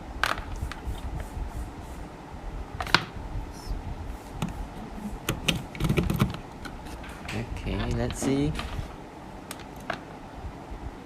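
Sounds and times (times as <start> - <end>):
low handling rumble: 6.4 - 9.4.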